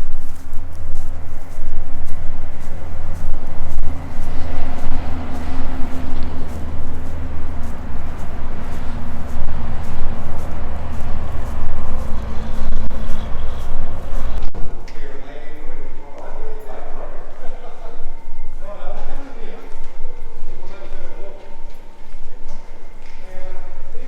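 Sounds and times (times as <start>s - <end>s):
vehicle engine droning: 0.0s - 14.6s.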